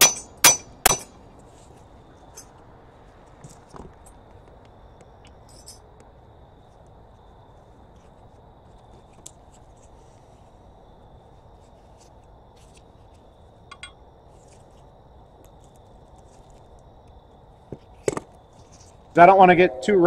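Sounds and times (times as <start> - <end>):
hammer tapping metal: 0.0 - 1.1.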